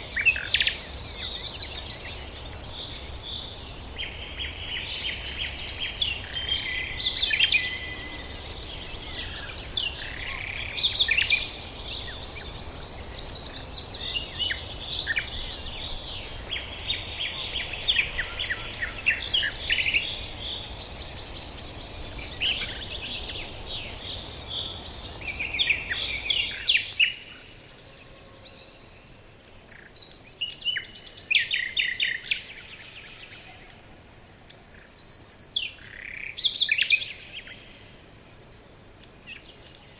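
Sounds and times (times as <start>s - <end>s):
birds chirping and trilling: 0.0s - 39.9s
steady background hiss: 0.0s - 39.9s.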